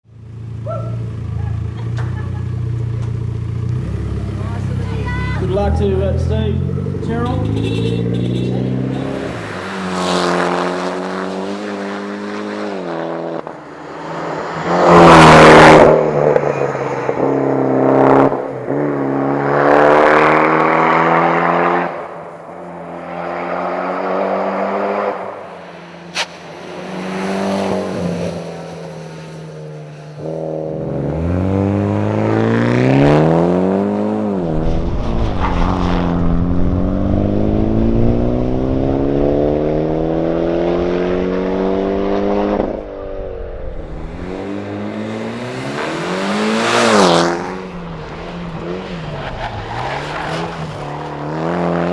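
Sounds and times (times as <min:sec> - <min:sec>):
car engine driven hard: 0:00.0 - 0:51.9
loud rushing burst: 0:43.2 - 0:50.7.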